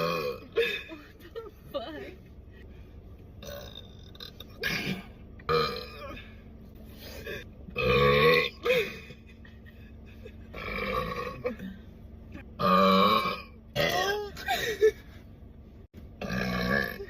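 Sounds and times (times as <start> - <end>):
woman burping: 0.0 - 0.9, 3.4 - 6.4, 7.0 - 9.0, 10.5 - 11.8, 12.4 - 14.6, 16.2 - 17.0.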